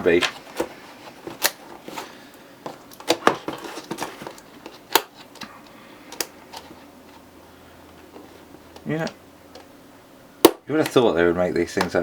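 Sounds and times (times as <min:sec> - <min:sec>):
plastic packaging clicking and crackling: 0:00.1 - 0:05.5.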